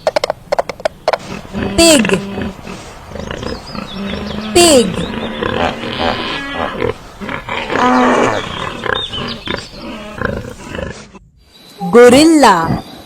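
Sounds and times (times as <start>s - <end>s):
pig grunting: 1.2s - 11.3s
pig squealing: 3.2s - 11.1s.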